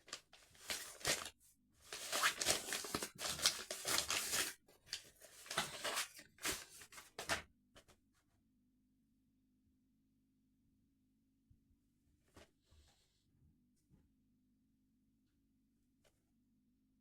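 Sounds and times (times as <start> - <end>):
plastic packaging tearing and crinkling: 0.1 - 1.3, 1.9 - 4.5.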